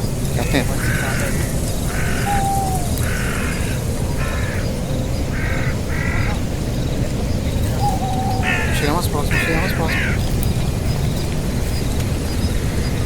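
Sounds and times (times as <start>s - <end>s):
animal rasping calls: 0.3s - 6.6s, 7.6s - 10.3s.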